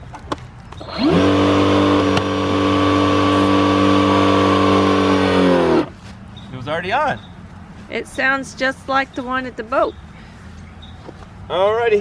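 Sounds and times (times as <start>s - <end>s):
pressure washer motor humming: 0.8s - 6.0s.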